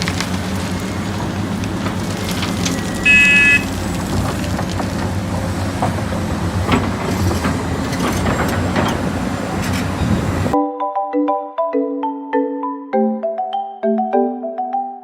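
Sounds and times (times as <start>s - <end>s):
truck engine running: 0.0s - 10.6s
high-pitched beep: 2.8s - 3.6s.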